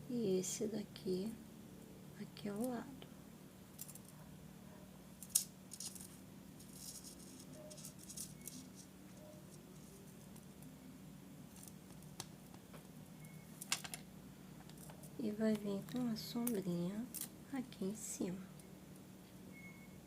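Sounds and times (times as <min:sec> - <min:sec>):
small craft pieces clicking: 0:05.2 - 0:06.2.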